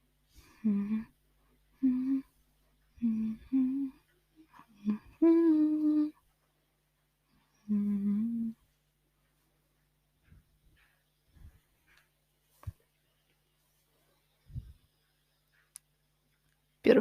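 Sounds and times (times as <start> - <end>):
girl humming: 0.5 - 1.2, 1.8 - 2.4, 3.0 - 6.2, 7.6 - 8.6.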